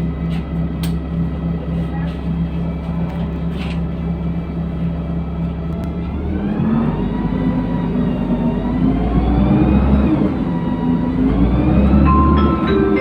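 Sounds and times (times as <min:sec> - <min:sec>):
bus engine accelerating: 0:00.0 - 0:13.0.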